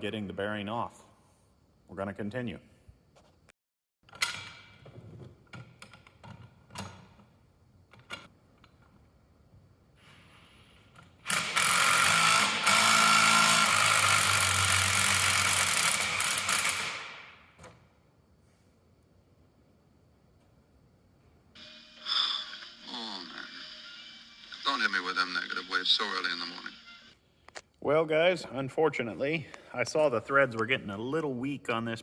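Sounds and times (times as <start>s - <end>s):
impact wrench running: 11.2s - 17.3s.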